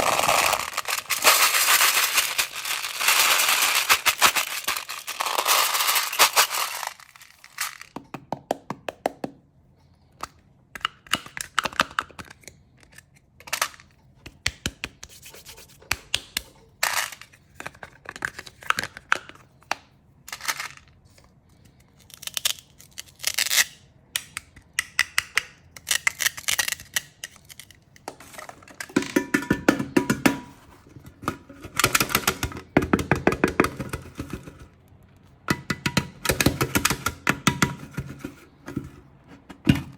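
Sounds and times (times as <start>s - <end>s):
packaging crinkling: 0.0s - 8.0s
candy packaging clicks and rattles: 0.0s - 8.3s, 10.7s - 14.7s, 16.0s - 30.4s, 31.1s - 39.9s.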